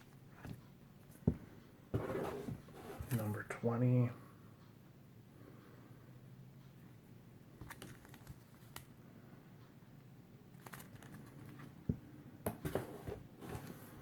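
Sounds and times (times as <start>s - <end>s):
comic book pages crinkling: 7.6s - 8.8s, 10.6s - 11.6s.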